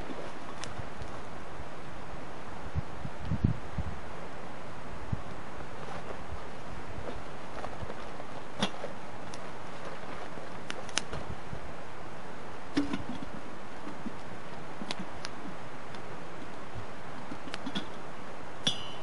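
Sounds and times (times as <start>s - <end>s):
steady hiss: 0.0s - 19.0s
sharp clicks and knocks: 12.7s - 18.0s.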